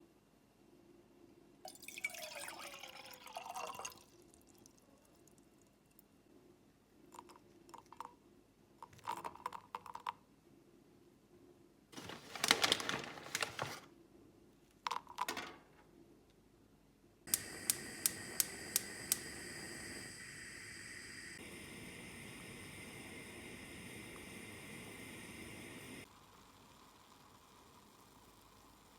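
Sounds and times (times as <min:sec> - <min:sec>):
rustling: 0:12.0 - 0:13.9
gas stove igniter clicks: 0:17.3 - 0:21.3
gas burner hissing: 0:17.3 - 0:26.1.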